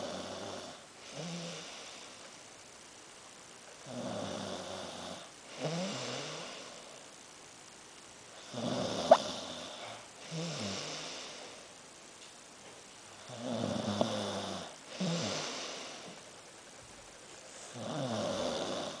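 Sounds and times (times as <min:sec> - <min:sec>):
person snoring: 0:00.0 - 0:02.1, 0:03.8 - 0:07.0, 0:08.4 - 0:11.6, 0:13.2 - 0:16.2, 0:17.7 - 0:19.0.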